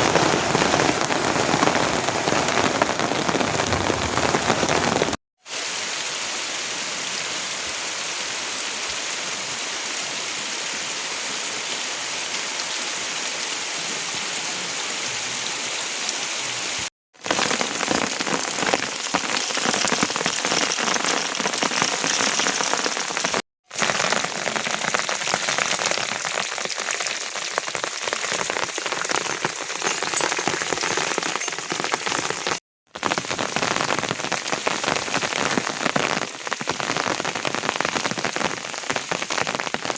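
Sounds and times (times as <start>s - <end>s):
raindrops hitting a surface: 0.0s - 7.8s, 16.0s - 39.9s
steady rain falling: 0.0s - 39.9s.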